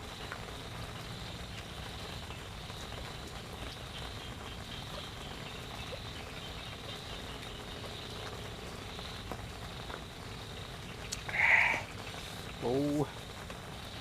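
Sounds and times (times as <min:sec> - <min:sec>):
low background hiss: 0:00.0 - 0:14.0
faint clicks: 0:11.0 - 0:12.7.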